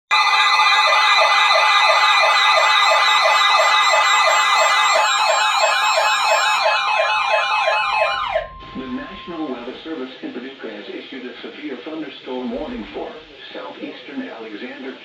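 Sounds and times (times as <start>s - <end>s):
electronic siren yelping: 0.1s - 9.6s
steady alert tones: 2.8s - 9.9s.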